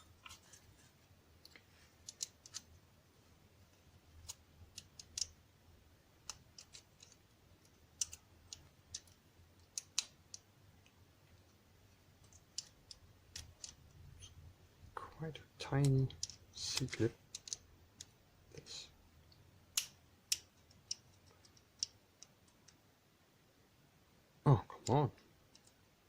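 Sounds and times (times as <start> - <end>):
small metallic clicks and taps: 1.4 - 2.7, 4.2 - 5.4, 6.2 - 11.6, 12.2 - 14.4, 15.6 - 18.1, 19.3 - 22.8, 24.8 - 25.8.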